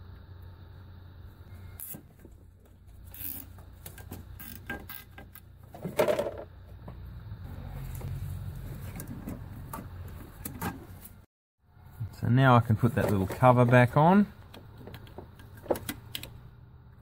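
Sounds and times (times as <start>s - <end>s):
engine parts clicking and rattling: 2.1s - 11.2s, 12.7s - 16.6s.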